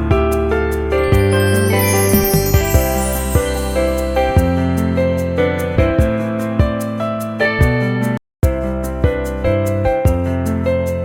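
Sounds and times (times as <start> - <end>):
soft instrumental music: 0.7 - 7.9.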